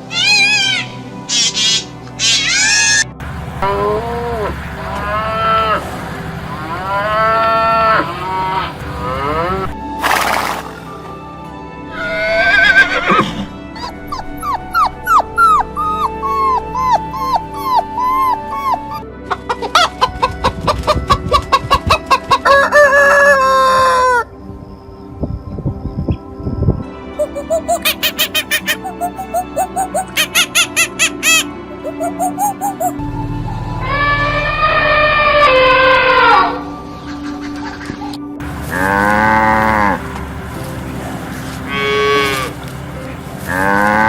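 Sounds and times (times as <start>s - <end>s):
cattle lowing: 3.2s - 9.8s, 12.1s - 19.0s, 38.4s - 44.0s
hens clucking: 3.2s - 9.8s, 13.8s - 24.0s, 27.2s - 33.0s
horse whinnying: 11.9s - 19.0s
dog yelping: 13.8s - 20.4s, 27.2s - 33.0s
rooster crowing: 22.0s - 24.2s.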